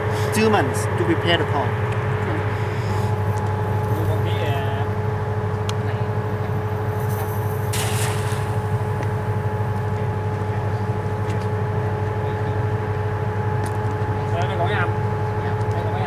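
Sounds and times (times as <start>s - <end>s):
machine drone with whine: 0.0s - 16.0s
brief hiss: 7.8s - 9.2s.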